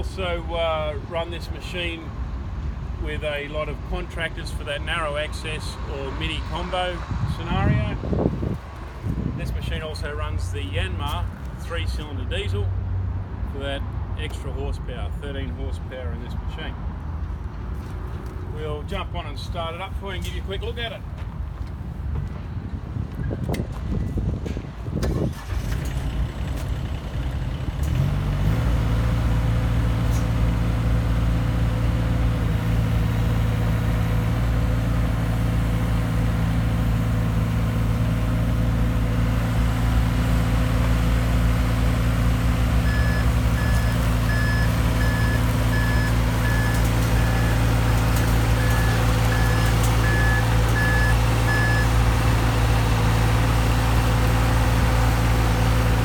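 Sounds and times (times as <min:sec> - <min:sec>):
diesel excavator engine running: 0:24.4 - 0:56.0
travel alarm beeps: 0:42.8 - 0:47.6, 0:48.6 - 0:51.9.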